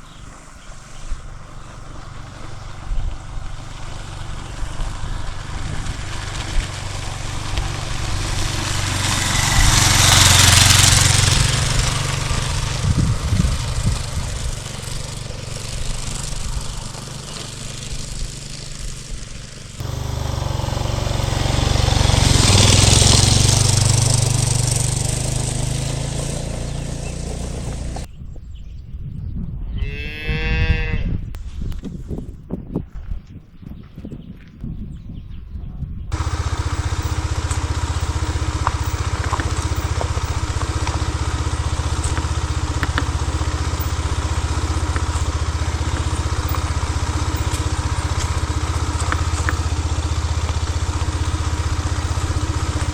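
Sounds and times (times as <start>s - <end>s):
motorcycle engine rumble: 0.0s - 28.6s, 36.1s - 52.9s
wind rush: 2.8s - 14.9s
cow mooing: 29.8s - 31.2s.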